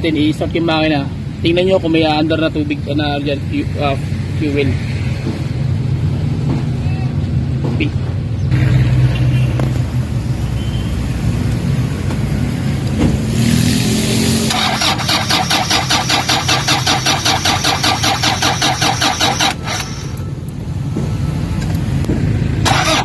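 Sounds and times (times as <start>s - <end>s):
starter cranking diesel engine: 14.5s - 20.3s, 22.6s - 23.0s.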